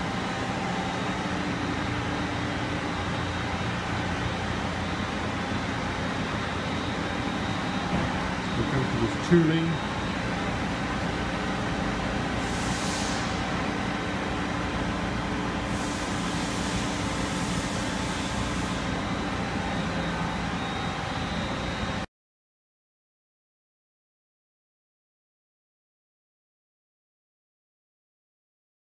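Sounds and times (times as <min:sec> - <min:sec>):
lathe mechanical hum: 0:00.0 - 0:22.1.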